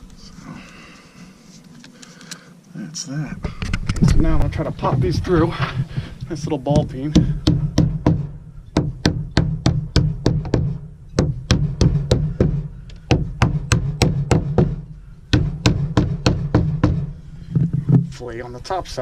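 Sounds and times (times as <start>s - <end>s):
hammer tapping on metal bolts: 6.6s - 18.1s.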